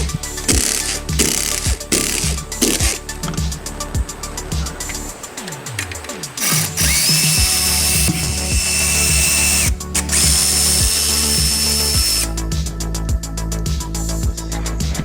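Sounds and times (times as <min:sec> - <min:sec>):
power tool whining: 0:00.0 - 0:03.4, 0:04.9 - 0:12.4
background music with steady beat: 0:00.0 - 0:15.0.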